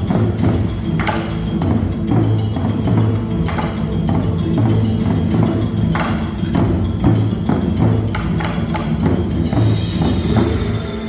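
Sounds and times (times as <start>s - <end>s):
high shimmer: 9.2s - 11.0s.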